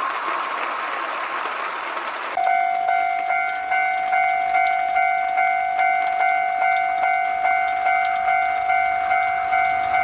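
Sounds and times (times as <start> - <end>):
level-crossing warning bell: 2.4 - 10.0.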